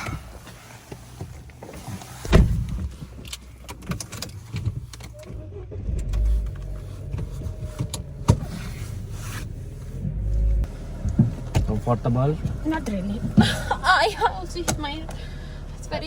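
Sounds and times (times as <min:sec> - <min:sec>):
clicks and shuffling in car: 0:00.0 - 0:16.0
car door slamming: 0:02.2 - 0:02.9.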